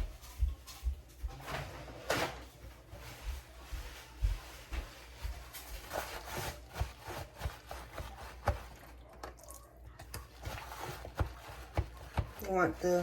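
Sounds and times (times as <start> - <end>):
paper towel rubbing fish: 2.9 - 9.0, 10.3 - 13.0.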